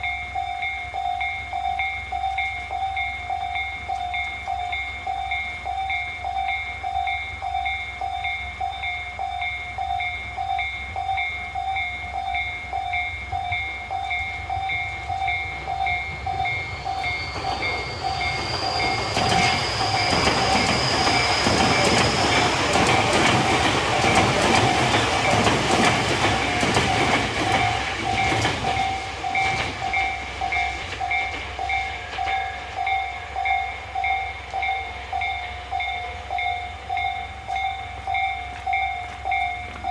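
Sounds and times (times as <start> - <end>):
high whine of train: 0.0 - 39.9
level-crossing warning bell: 0.0 - 39.9
train wheels clattering over rail joints: 15.7 - 33.6.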